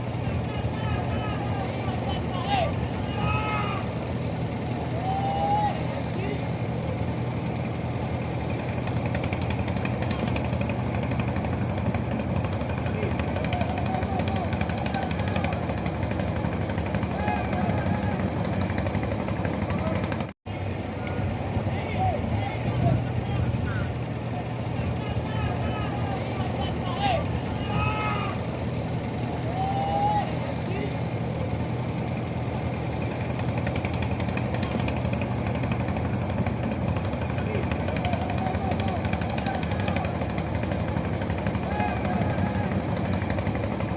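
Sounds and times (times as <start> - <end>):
boat engine humming: 0.0 - 43.9
fast ticking rattle: 6.0 - 20.3, 30.8 - 43.9.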